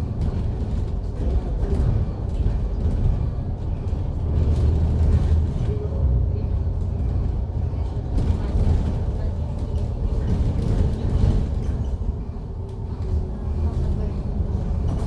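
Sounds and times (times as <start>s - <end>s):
bus engine and road rumble: 0.0s - 15.0s.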